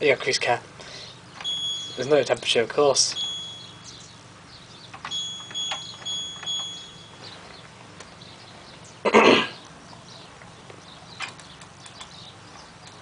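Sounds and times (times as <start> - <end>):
high-pitched electronic beeps: 1.4 - 2.2, 3.1 - 4.1, 5.0 - 7.4.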